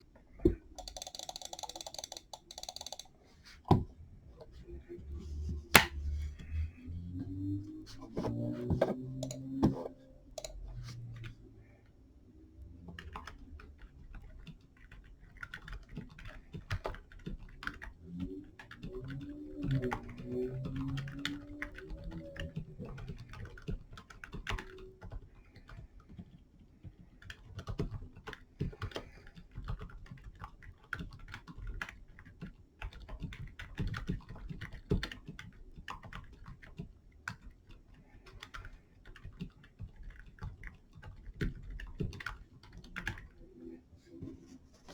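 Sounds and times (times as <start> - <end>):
typing on mechanical keyboard: 0.7 - 3.2, 9.2 - 11.4, 12.8 - 43.4.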